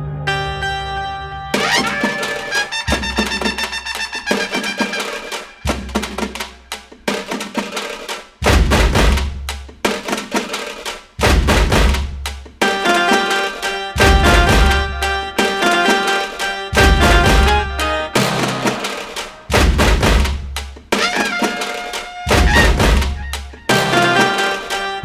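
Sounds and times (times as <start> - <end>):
music with drum beat and heavy bass: 1.6 - 25.0.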